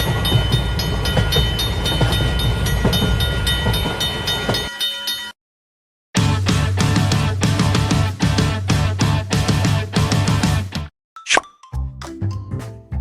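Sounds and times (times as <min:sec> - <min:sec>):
passing train rumble: 0:00.0 - 0:04.7
railroad crossing alarm ringing: 0:00.0 - 0:05.4
rock music with guitar: 0:06.2 - 0:10.9.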